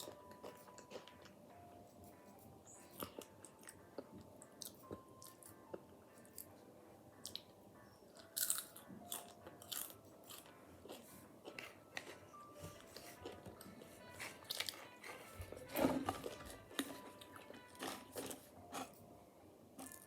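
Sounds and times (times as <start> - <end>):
potato chips crunching: 8.2 - 12.2, 13.0 - 19.0.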